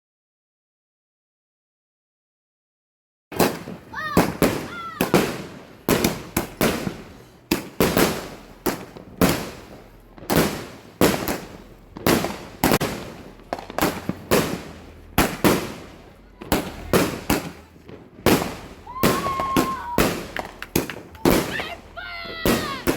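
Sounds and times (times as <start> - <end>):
firework shots: 3.3 - 22.9
rising firework whistles: 16.6 - 22.9.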